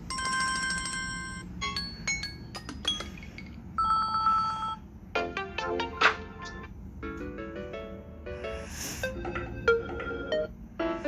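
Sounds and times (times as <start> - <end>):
bell-like ringtone melody: 0.1 - 4.8, 9.1 - 10.6.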